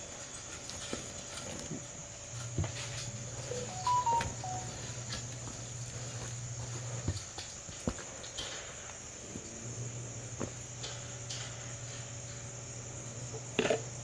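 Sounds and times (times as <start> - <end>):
crickets chirring: 0.1 - 14.0
stepped beeping notes: 3.5 - 4.8.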